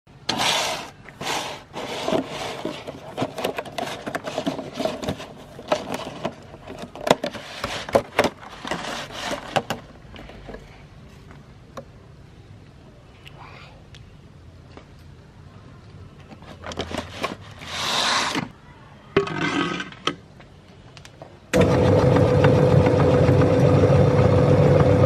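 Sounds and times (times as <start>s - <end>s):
meat grinder grinding: 21.6s - 25.0s.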